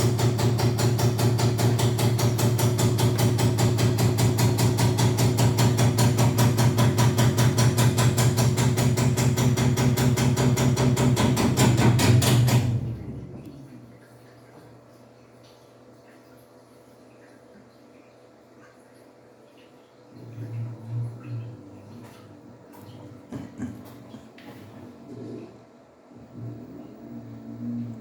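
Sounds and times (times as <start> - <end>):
washing machine knocking: 0.0 - 14.0
low hum: 26.2 - 28.0.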